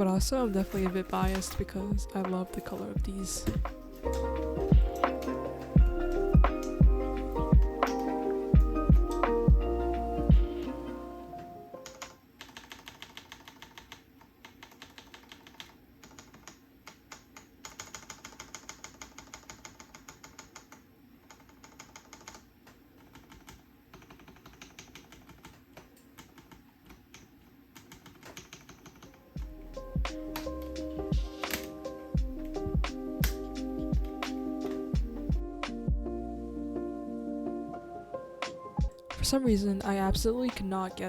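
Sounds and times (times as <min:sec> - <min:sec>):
keyboard keys clacking: 0:00.0 - 0:13.9, 0:27.8 - 0:41.0.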